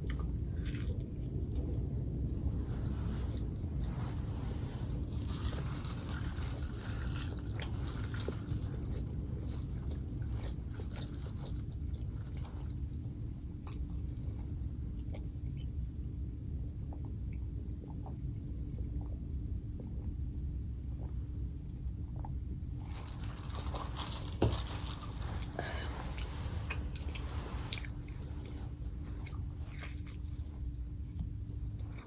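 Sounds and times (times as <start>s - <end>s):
person chewing food: 0.0s - 2.2s, 4.9s - 15.7s, 22.1s - 32.0s
low background hum: 0.0s - 32.0s
mouth clicks and crunches: 22.2s - 30.8s.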